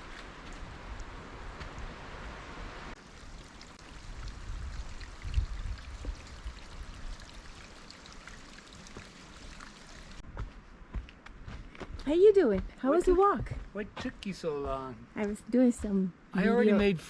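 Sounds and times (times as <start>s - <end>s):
running water hiss: 0.0s - 10.2s
wind rumble on microphone: 3.8s - 7.4s.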